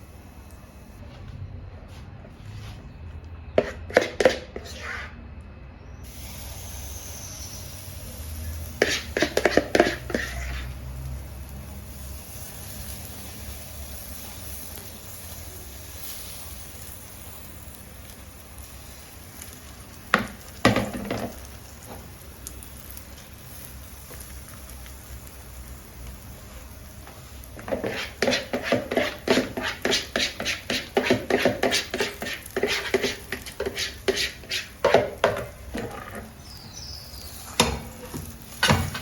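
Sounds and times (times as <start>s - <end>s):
food sizzling in a pan: 6.0s - 39.0s
metal utensil clattering on pan: 37.6s - 39.0s.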